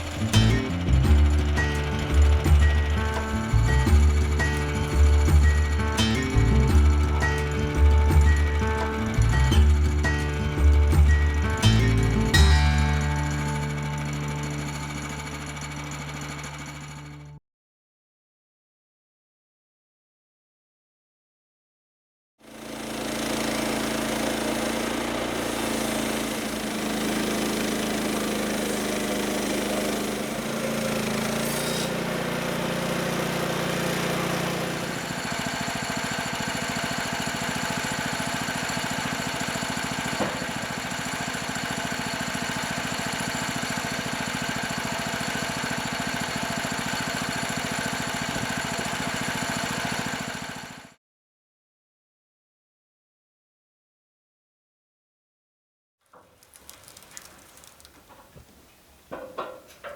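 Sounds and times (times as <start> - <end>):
fast dense pulsing: 0.0 - 17.1
sawmill engine running: 0.0 - 17.4, 22.4 - 51.0.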